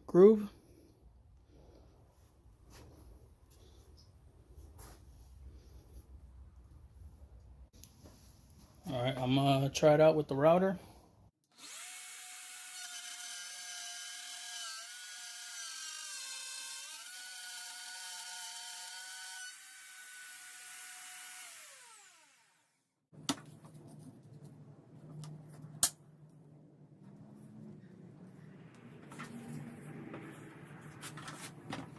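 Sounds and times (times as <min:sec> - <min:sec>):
wood router whining: 0:11.6 - 0:22.7
handling noises: 0:23.1 - 0:31.9.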